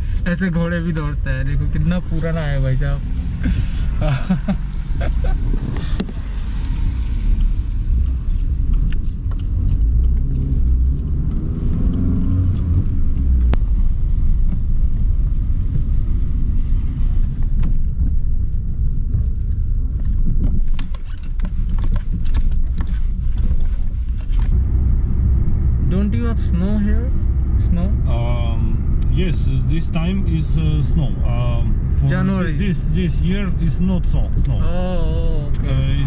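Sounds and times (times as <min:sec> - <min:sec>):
car engine and tyre rumble: 0:00.0 - 0:36.0.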